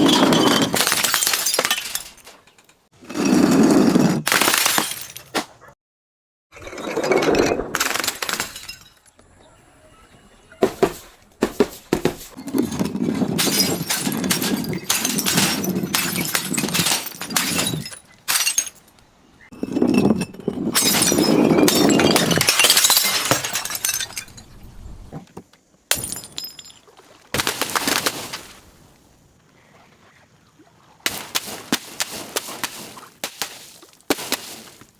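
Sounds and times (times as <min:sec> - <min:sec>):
glass crushing and shattering: 0:00.0 - 0:02.9, 0:04.3 - 0:05.4, 0:06.7 - 0:09.2, 0:12.4 - 0:24.7, 0:25.9 - 0:26.8.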